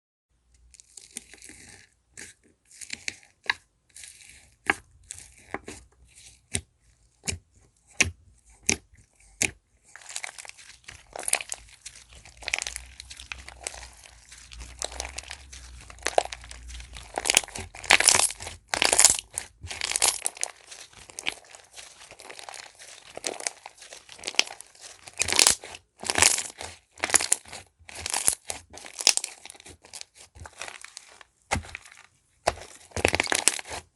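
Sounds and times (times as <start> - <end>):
slime popping and crackling: 10.0 - 33.9.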